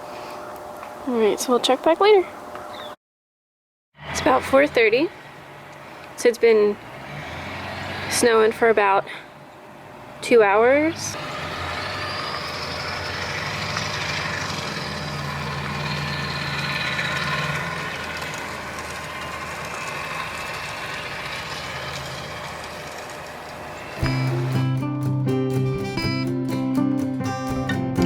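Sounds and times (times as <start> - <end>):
motor humming and whining: 10.7 - 24.7.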